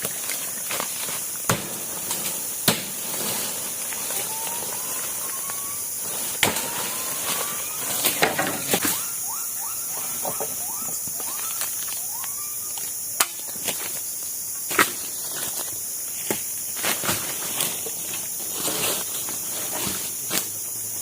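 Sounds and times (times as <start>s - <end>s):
high insect drone: 0.0s - 21.0s
short rising whistled calls: 4.0s - 13.7s.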